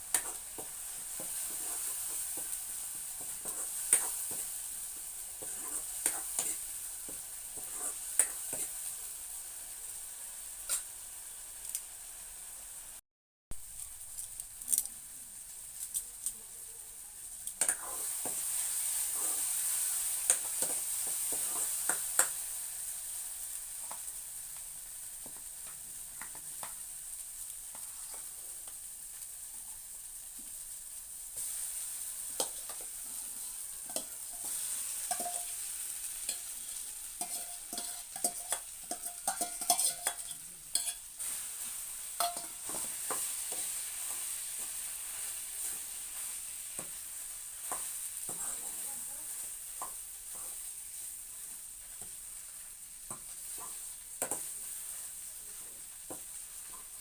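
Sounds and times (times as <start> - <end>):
food sizzling in a pan: 0.0 - 57.0
metal spoon clinking against pan: 33.9 - 35.6, 37.2 - 41.1, 42.2 - 43.3.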